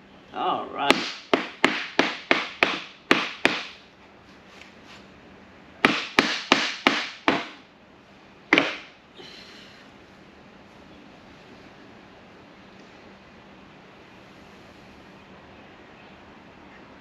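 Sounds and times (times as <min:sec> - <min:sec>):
hammer striking wood: 0:00.9 - 0:03.8, 0:05.8 - 0:07.6, 0:08.5 - 0:08.9.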